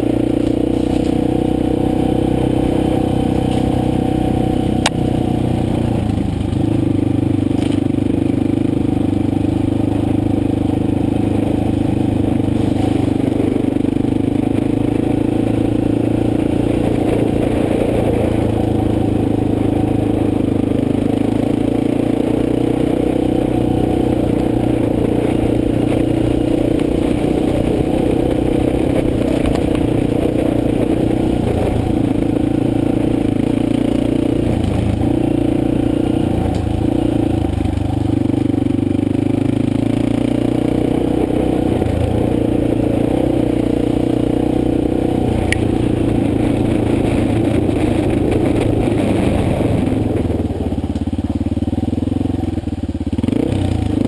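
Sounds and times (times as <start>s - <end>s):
motorcycle engine running: 0.0s - 54.0s
rattling and scraping: 0.4s - 1.3s.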